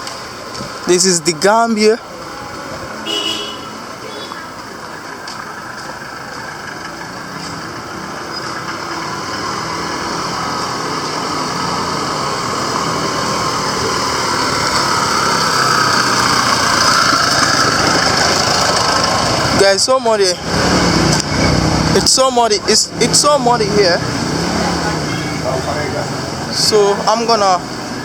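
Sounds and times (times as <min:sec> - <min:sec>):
vehicle engine running: 0:04.6 - 0:19.6.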